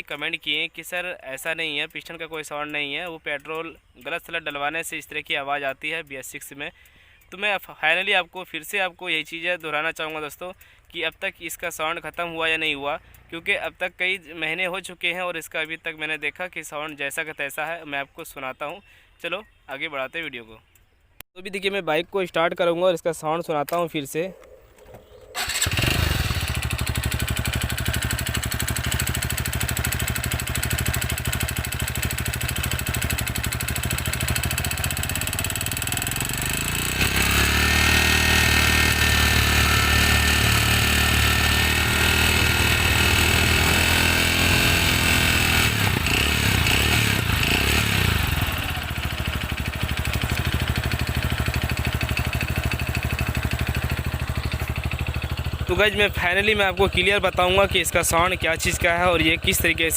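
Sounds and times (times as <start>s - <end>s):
motorcycle engine idling and revving: 7.8s - 17.1s, 25.0s - 59.9s.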